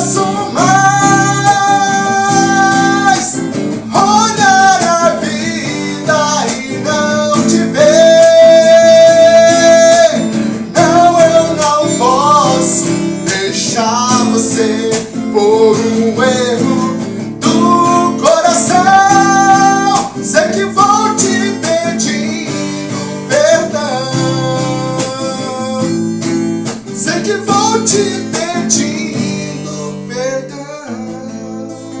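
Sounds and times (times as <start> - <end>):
band backing: 0.0 - 25.4
strummed acoustic guitar: 0.0 - 32.0.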